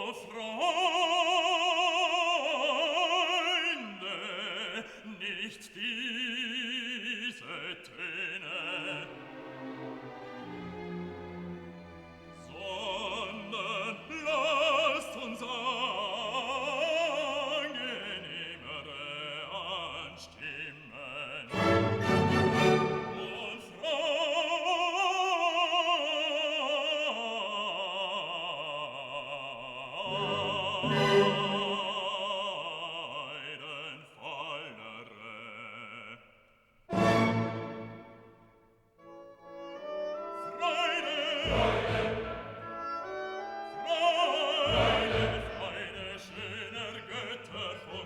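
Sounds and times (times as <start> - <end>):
operatic voice singing: 0.0 - 10.7, 12.3 - 38.2, 39.7 - 48.0
classical orchestral accompaniment: 7.0 - 20.3, 21.2 - 28.2, 30.0 - 32.8, 36.9 - 48.0.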